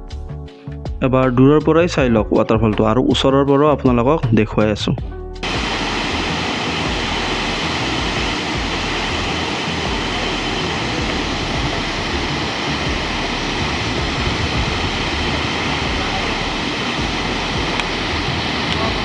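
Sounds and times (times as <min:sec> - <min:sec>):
waterfall roaring: 0:05.4 - 0:19.0.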